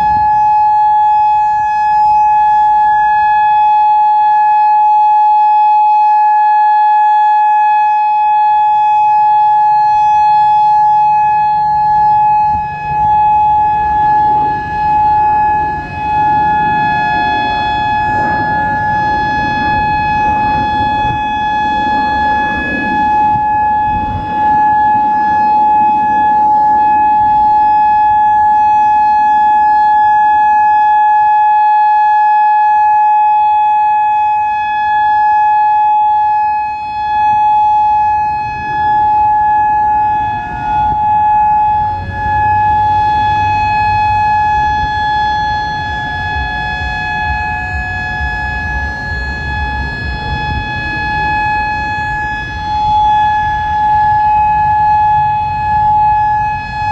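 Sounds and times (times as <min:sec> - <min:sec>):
warning siren steady tone: 0:00.0 - 0:56.9
low rumble: 0:11.9 - 0:28.6.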